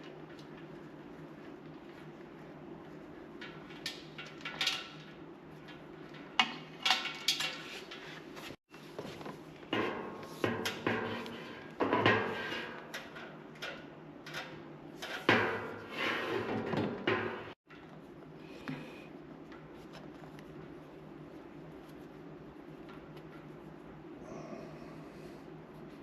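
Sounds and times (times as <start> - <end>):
tools knocking and clattering: 3.4 - 8.0, 9.7 - 18.0.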